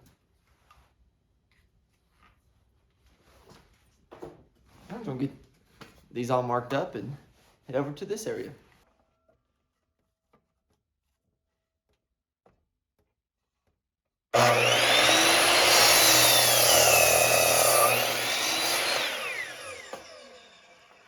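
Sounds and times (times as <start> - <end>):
power saw cutting wood: 14.4 - 21.0.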